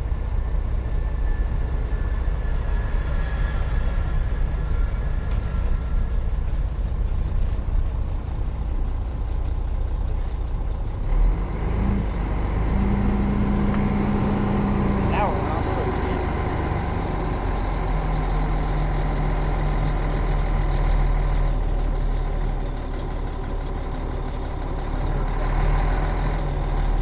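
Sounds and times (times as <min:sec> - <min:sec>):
truck engine running: 0:06.0 - 0:27.0.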